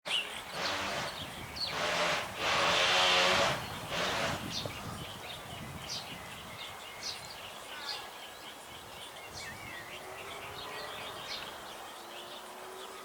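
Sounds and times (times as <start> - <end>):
sparrows chirping: 0.1 - 13.0
loud rushing noise: 0.6 - 4.6.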